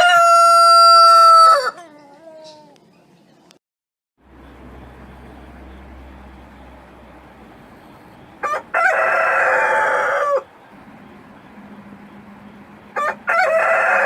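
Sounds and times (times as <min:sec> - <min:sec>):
rooster crowing: 0:00.0 - 0:02.0, 0:08.4 - 0:10.6, 0:12.5 - 0:14.0
low hum: 0:04.2 - 0:08.8, 0:10.7 - 0:14.0.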